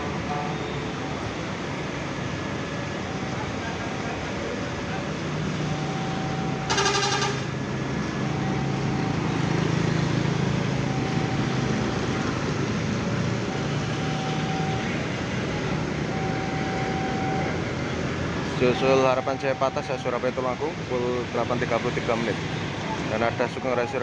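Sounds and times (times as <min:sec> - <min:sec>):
bus engines humming: 0:00.0 - 0:24.0
bus horn: 0:06.6 - 0:07.6.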